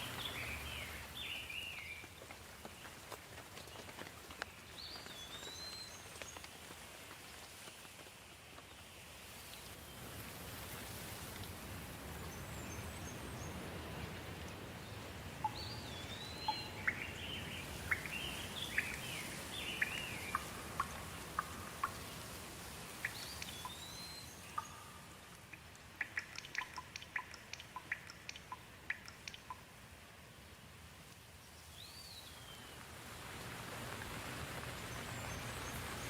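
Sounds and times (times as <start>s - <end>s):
steady rain: 0.0s - 36.0s
songbird chirping and whistling: 15.4s - 22.1s, 23.0s - 25.2s, 26.0s - 29.6s
sharp drips: 15.4s - 29.8s.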